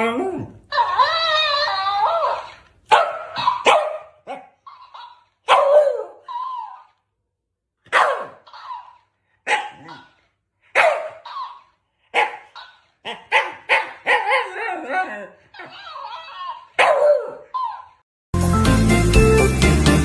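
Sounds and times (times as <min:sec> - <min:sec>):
dog barking: 0:02.2 - 0:07.0, 0:07.8 - 0:18.0.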